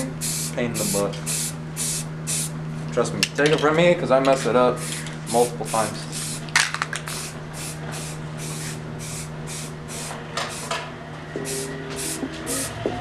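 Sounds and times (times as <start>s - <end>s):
steady low hum: 0.0s - 13.0s
spray paint hissing: 0.2s - 2.5s, 4.8s - 10.7s, 11.4s - 12.8s.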